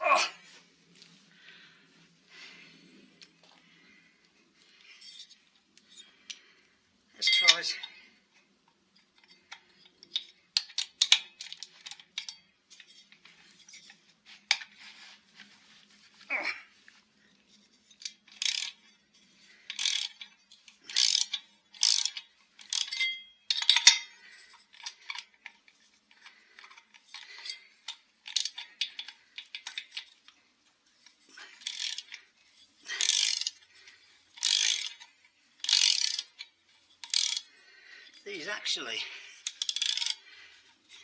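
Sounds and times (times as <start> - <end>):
hand tools clicking and rasping: 9.0 - 14.8, 17.5 - 30.4, 31.0 - 41.0.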